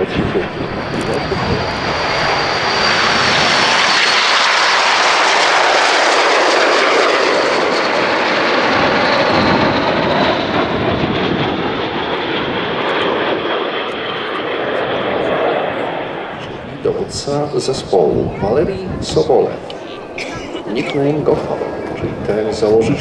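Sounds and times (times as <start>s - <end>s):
airplane flying past: 0.0s - 23.0s
high engine whine: 0.0s - 23.0s.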